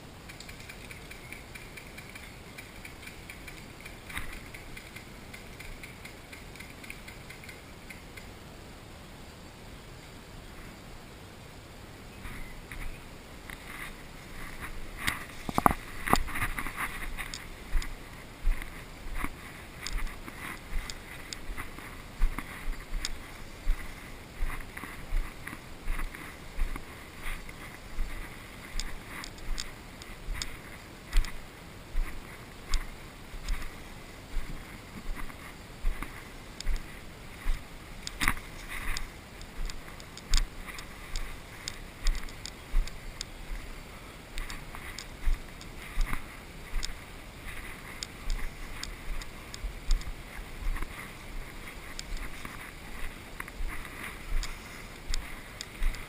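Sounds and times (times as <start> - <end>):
footsteps walking slowly: 0.3 - 8.3, 12.1 - 56.0
rustling of gear: 12.2 - 31.4, 44.4 - 56.0.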